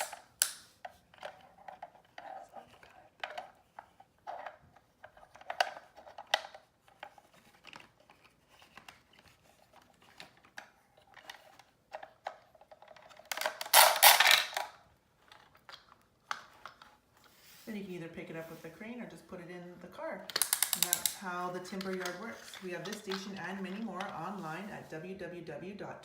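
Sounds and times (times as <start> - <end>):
wooden toy clicks and knocks: 20.3 - 24.2
wooden pieces rattling clatter: 20.4 - 21.2.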